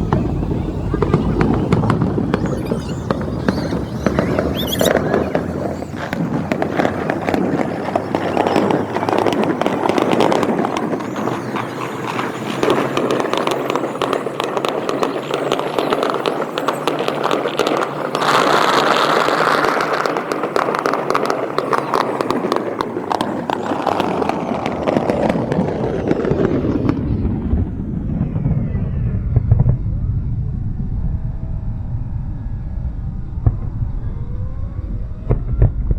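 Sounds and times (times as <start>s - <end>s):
low rumble: 0.0s - 8.2s, 24.2s - 35.9s
fireworks crackling and popping: 0.0s - 30.1s, 34.8s - 35.9s.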